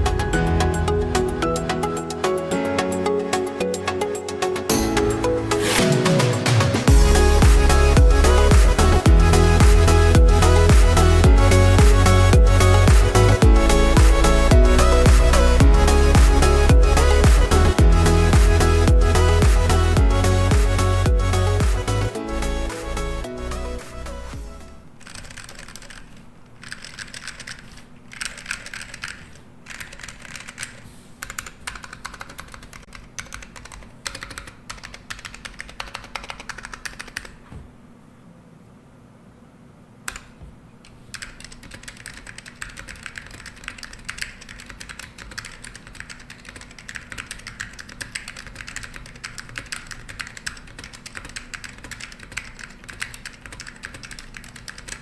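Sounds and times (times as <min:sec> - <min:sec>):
typing on mechanical keyboard: 0:25.0 - 0:37.4, 0:40.1 - 0:55.0.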